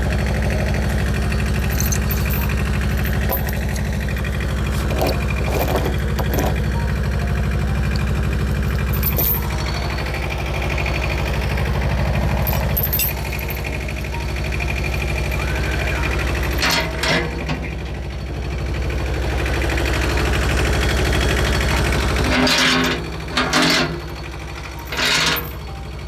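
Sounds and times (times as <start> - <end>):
engine running at low speed: 0.0 - 26.0
clanks and rattles: 0.8 - 10.2, 11.5 - 13.9, 16.4 - 18.4, 21.4 - 25.8.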